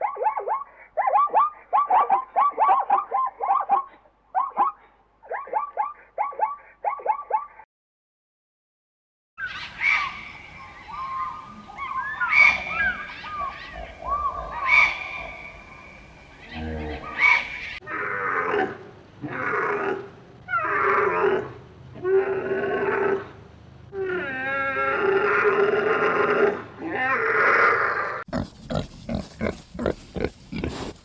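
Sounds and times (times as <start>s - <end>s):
chirping animal calls: 9.4s - 17.9s, 27.3s - 31.0s
pigs squealing: 10.9s - 15.6s, 16.4s - 23.4s, 24.0s - 31.0s.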